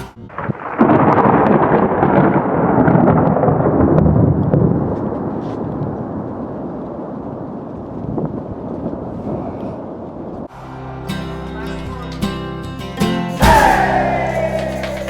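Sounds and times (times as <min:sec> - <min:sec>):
thunder rumbling: 0:00.1 - 0:12.1.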